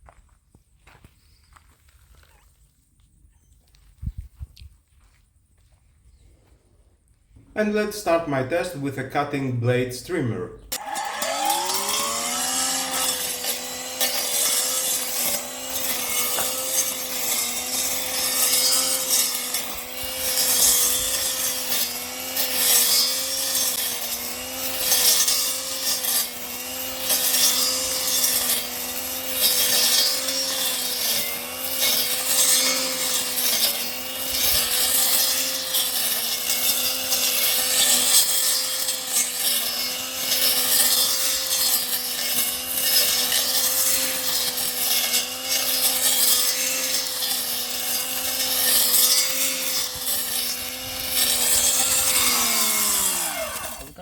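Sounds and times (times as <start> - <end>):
blade cutting through weeds: 10.7 - 54.0
brush-cutter motor whine: 10.7 - 54.0.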